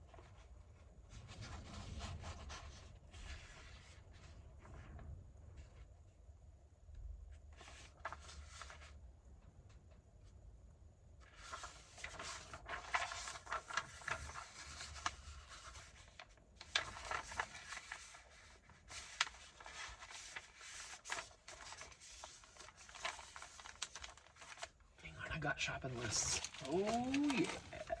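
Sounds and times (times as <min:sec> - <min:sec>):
paper sheets rustling: 0:00.1 - 0:05.0, 0:07.5 - 0:09.0, 0:11.2 - 0:28.0.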